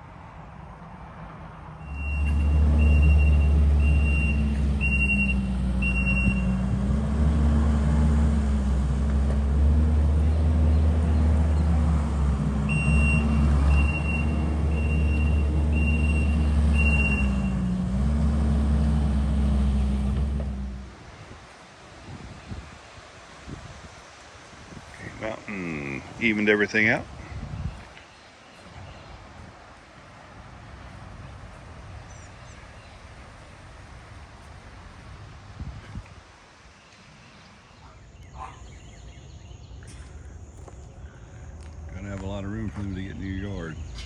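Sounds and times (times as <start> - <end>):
reversing alarm beeps: 1.8 - 6.6, 12.7 - 17.6
truck engine running: 1.8 - 21.0.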